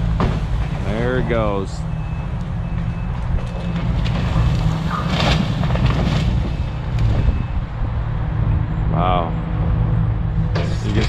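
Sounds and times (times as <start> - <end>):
low engine rumble: 0.0 - 11.0
tree trunk cracking and crashing: 3.4 - 7.2.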